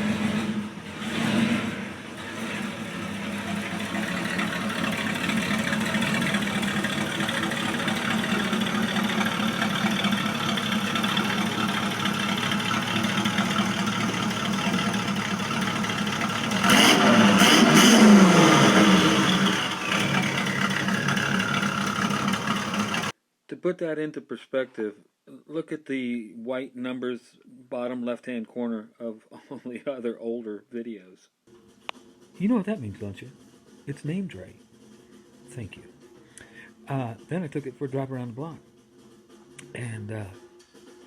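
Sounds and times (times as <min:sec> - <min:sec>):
car engine idling: 0:00.0 - 0:23.1
engine revving: 0:00.0 - 0:23.1.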